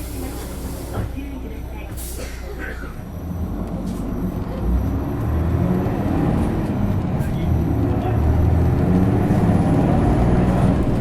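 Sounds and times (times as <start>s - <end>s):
bus diesel engine pulling: 0.0s - 11.0s.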